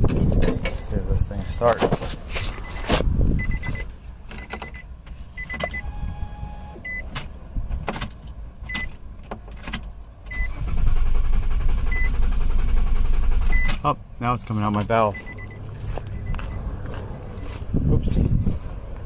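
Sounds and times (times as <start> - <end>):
starter motor cranking engine: 10.3 - 13.8.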